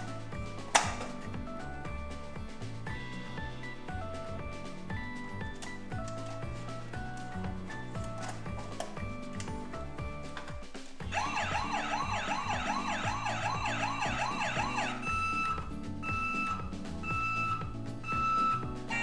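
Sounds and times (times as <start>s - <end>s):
background music: 0.0s - 19.0s
cartoon siren: 11.1s - 19.0s.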